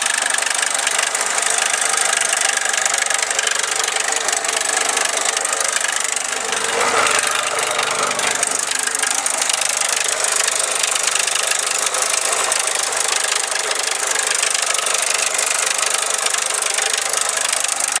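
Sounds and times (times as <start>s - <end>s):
engine metallic clatter: 0.0s - 18.0s.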